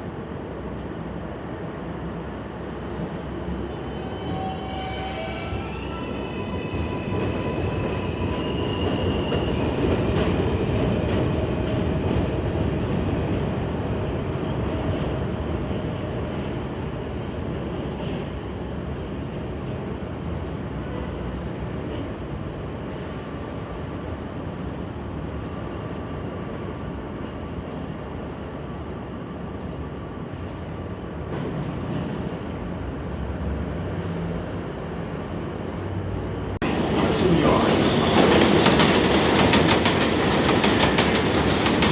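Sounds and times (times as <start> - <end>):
train wheel squeal: 0.0 - 12.3, 13.7 - 18.7, 22.4 - 26.3
subway train rumbling: 0.0 - 41.9.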